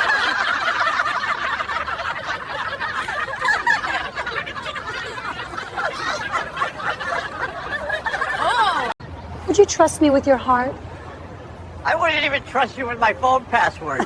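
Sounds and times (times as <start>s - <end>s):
people laughing: 0.0s - 9.0s.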